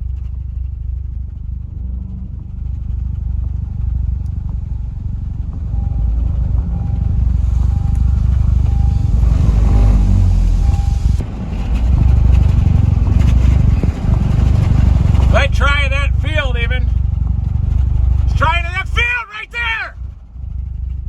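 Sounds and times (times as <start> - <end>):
vehicle engine and road rumble: 0.0 - 21.0
short beeps: 5.8 - 9.9, 10.6 - 11.2.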